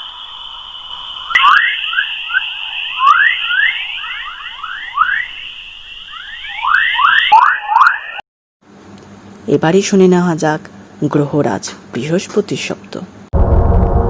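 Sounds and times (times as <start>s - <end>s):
steady high tone: 0.0s - 8.2s.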